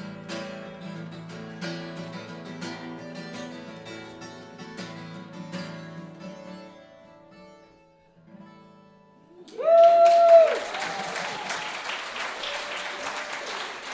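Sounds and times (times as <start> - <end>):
audience applause: 9.4 - 13.9
crowd cheering: 9.4 - 13.9.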